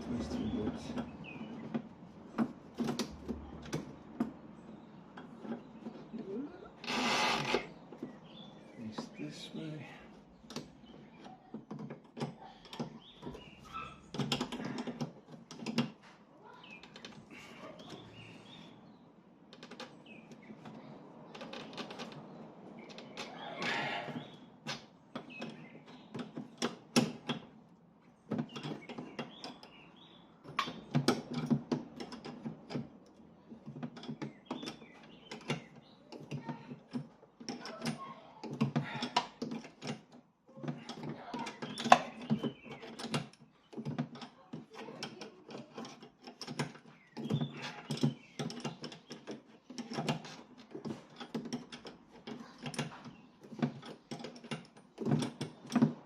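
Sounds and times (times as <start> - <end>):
hand tools clicking on metal: 30.4 - 56.0.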